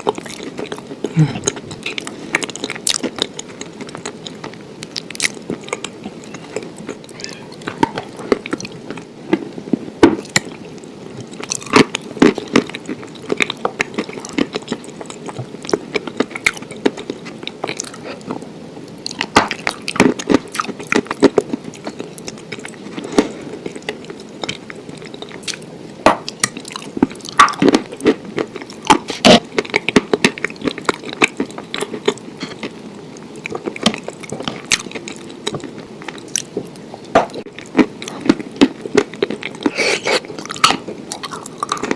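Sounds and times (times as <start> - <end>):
person chewing crunchy food: 0.0 - 41.9
wet mouth sounds: 39.4 - 41.9.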